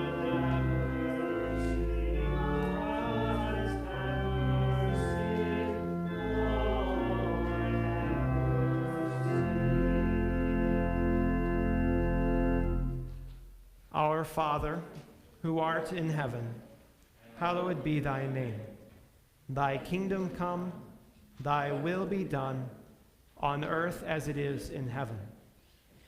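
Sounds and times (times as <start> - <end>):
congregation singing: 0.0 - 13.1, 17.2 - 18.8, 19.6 - 22.8
church organ chords: 0.0 - 14.7.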